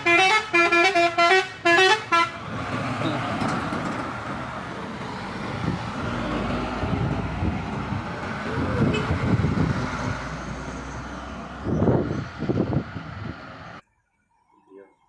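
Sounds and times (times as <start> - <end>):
truck engine driving past: 2.0 - 13.8.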